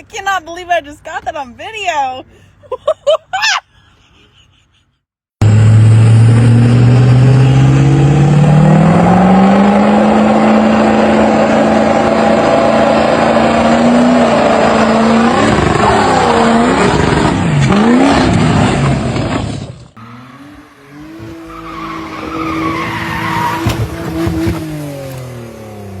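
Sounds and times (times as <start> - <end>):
vehicle engine revving: 5.4 - 26.0.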